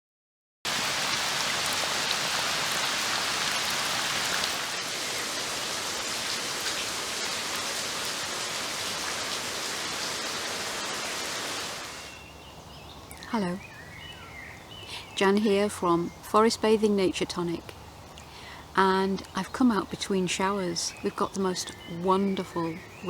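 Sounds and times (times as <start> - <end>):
steady rain falling: 0.7 - 12.3.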